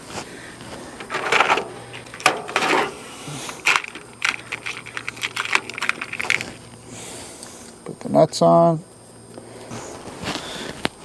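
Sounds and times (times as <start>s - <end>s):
small metal parts clinking: 1.0s - 6.6s.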